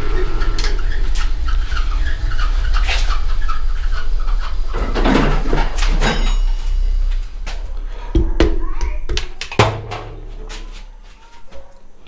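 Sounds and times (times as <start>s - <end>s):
lathe machine hum: 0.0s - 8.9s.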